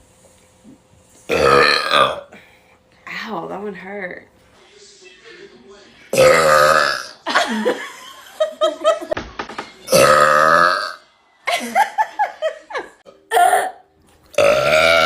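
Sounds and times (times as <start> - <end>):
woman burping: 1.3 - 2.4, 6.2 - 7.2, 9.9 - 11.0, 13.1 - 15.0.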